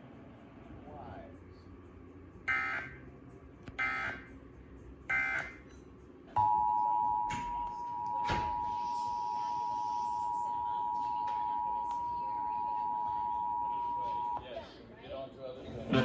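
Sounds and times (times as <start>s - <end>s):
two-tone attention signal: 2.5s - 3.0s, 5.1s - 5.6s.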